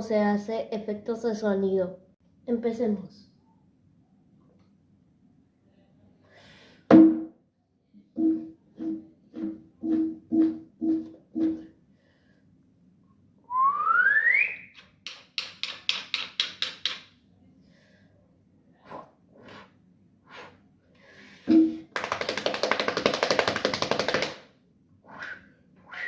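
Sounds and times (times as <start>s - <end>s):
sharp knocks: 6.9s - 7.4s, 8.2s - 11.7s
taps and thump: 8.2s - 11.7s
cartoon whistle glide: 13.7s - 14.6s, 25.2s - 26.0s.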